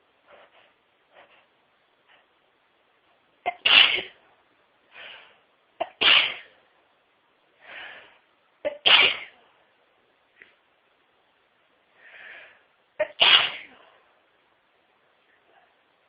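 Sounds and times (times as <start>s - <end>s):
quiet breaths: 0.0s - 3.3s, 4.2s - 5.8s, 6.5s - 8.6s, 11.6s - 13.0s, 13.6s - 16.0s
person sneezing: 3.5s - 4.2s, 5.8s - 6.6s, 8.7s - 9.4s, 13.0s - 13.8s.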